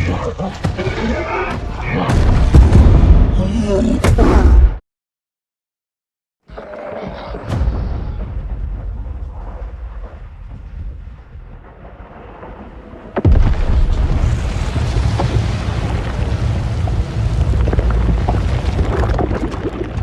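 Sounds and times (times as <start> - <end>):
giant monster rumbling blast: 1.8 - 4.7, 7.3 - 20.0.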